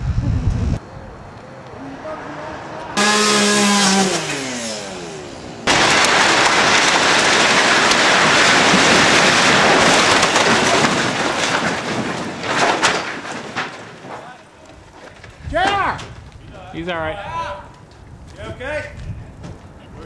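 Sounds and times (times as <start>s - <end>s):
roof crashing down: 5.6s - 16.2s
falling timber and debris: 5.6s - 16.4s.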